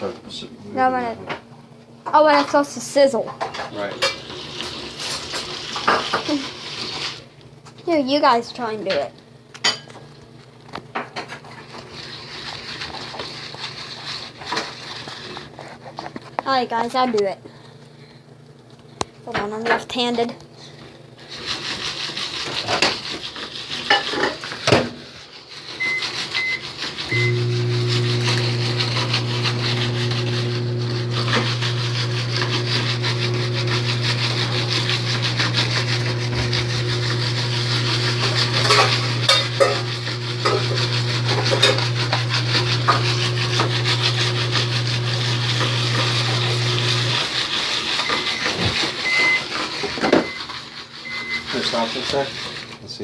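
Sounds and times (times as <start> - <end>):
pan scraping and rattling on grate: 3.3 - 7.3, 11.2 - 16.2, 21.2 - 53.0
pan knocking: 28.2 - 44.8
short high beeps: 49.1 - 49.4, 51.1 - 51.4.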